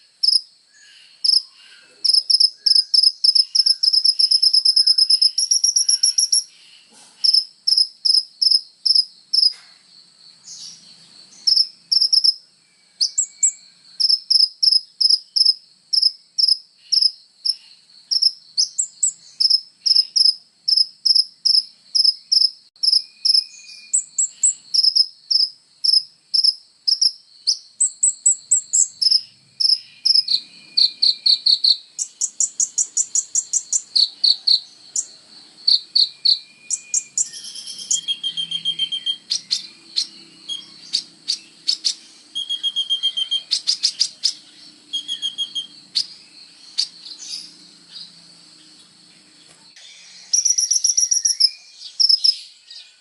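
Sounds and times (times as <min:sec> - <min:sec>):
sunbird singing high chips: 0:00.0 - 0:09.6, 0:13.0 - 0:35.1, 0:35.7 - 0:53.0
bird trilling: 0:02.3 - 0:06.5, 0:35.7 - 0:48.1.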